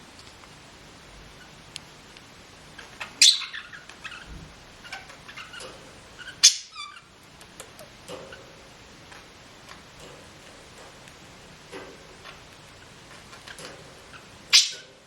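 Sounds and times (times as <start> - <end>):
soft clicks and small chirps: 1.3 - 10.2
bird squeaking shrilly: 3.2 - 3.8.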